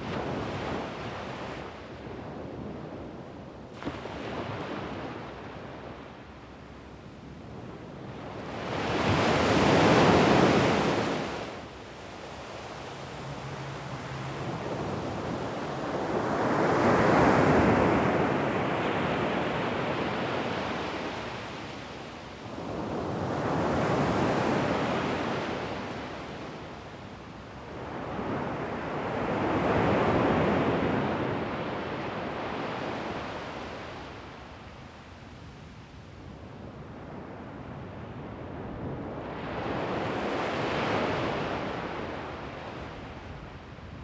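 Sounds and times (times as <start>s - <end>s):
gentle waves breaking on beach: 8.6s - 21.8s.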